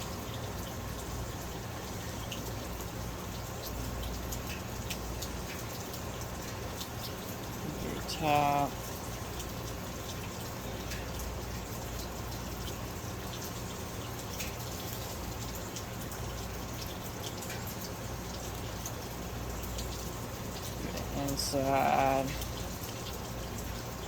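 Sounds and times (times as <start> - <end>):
background hiss and hum: 0.0 - 24.0
wet clicks and squishes: 2.2 - 7.6, 9.3 - 21.5, 22.2 - 23.9.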